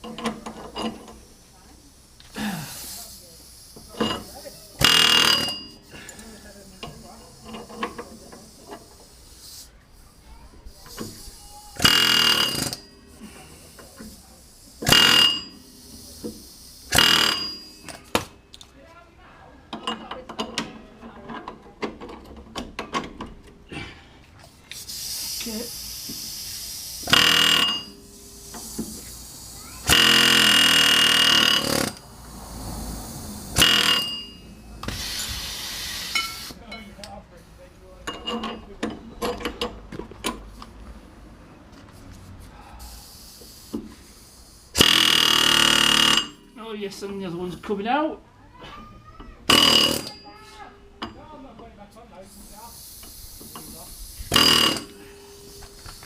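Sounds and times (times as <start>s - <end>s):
pneumatic air hammer burst: 0.0s - 18.4s, 24.4s - 36.6s, 42.3s - 46.6s, 48.7s - 51.2s, 52.2s - 56.0s.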